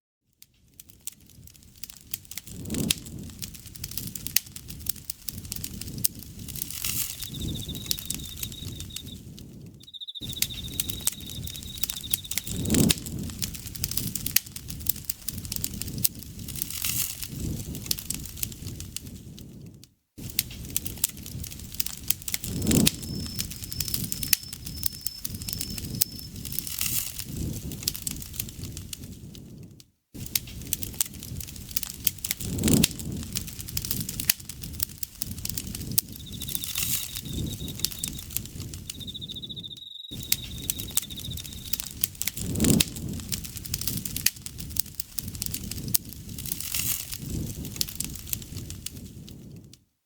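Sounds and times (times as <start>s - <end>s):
wood fire crackling and popping: 0.4s - 49.8s
insect trilling: 6.7s - 9.2s, 9.8s - 12.9s, 22.4s - 26.5s, 35.6s - 42.1s.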